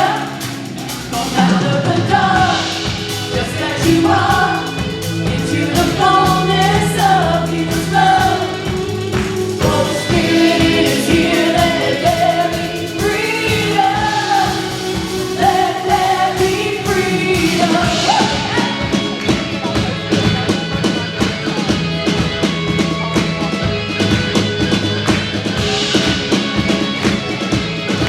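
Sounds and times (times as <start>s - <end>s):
voices singing together: 0.0s - 21.0s
steady drum beat: 0.0s - 28.0s
sustained keyboard chords: 0.0s - 28.0s.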